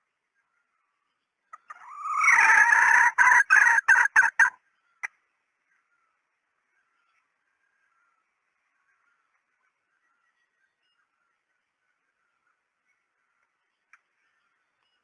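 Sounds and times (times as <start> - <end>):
hen calling: 1.5 - 5.1.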